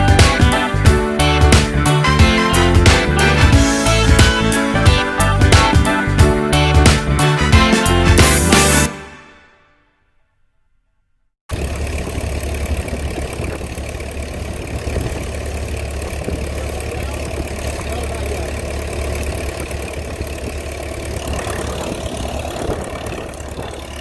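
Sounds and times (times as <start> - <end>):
air compressor engine running: 11.5 - 24.0.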